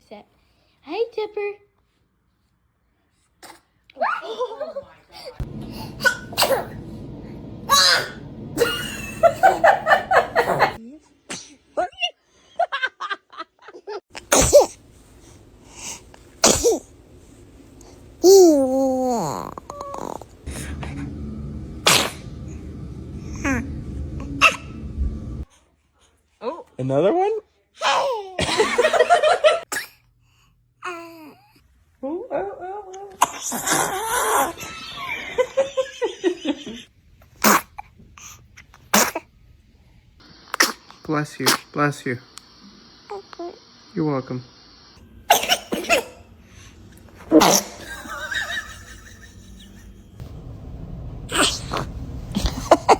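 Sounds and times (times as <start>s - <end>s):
baby sneezing: 5.9s - 6.8s, 11.3s - 11.6s, 14.2s - 14.8s, 16.4s - 16.9s, 37.4s - 37.9s, 38.8s - 39.3s, 40.5s - 41.7s, 45.3s - 46.2s, 47.3s - 47.8s, 51.3s - 52.9s
baby soft vocal sounds: 18.2s - 20.4s.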